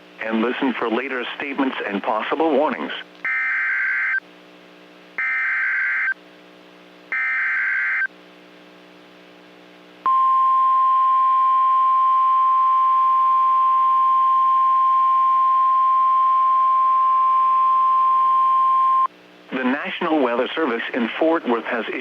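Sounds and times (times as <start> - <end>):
steady warning alarm tone: 3.3 - 4.2, 5.2 - 6.2, 7.1 - 8.1.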